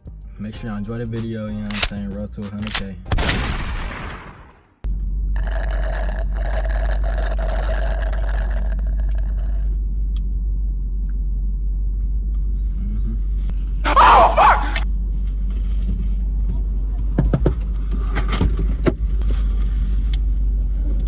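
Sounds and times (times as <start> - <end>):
car cabin rumble: 8.8 - 21.0.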